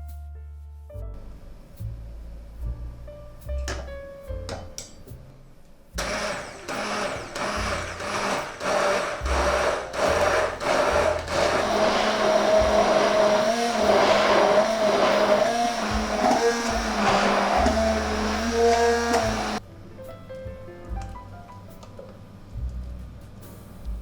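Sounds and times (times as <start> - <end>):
blender motor running: 6.0 - 19.6.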